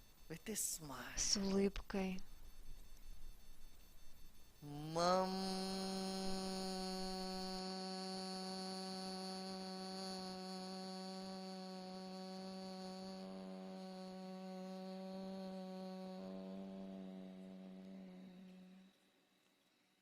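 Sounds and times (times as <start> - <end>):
person chanting one long tone: 4.5 - 19.0.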